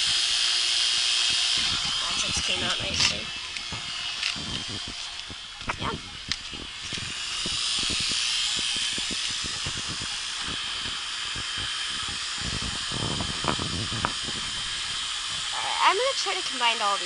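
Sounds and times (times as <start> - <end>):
vacuum pump hissing: 0.0 - 17.0.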